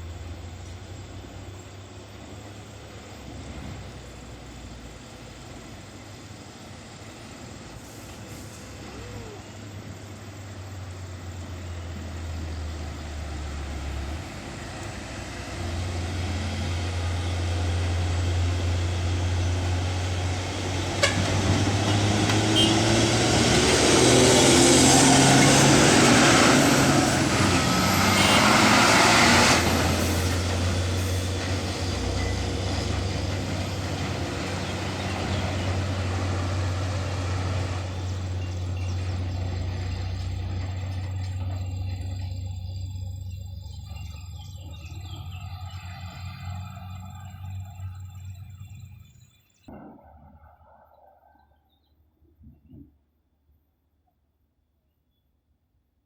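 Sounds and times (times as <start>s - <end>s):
dump truck diesel engine roaring: 0.0s - 49.1s
loud air hiss: 7.7s - 9.0s.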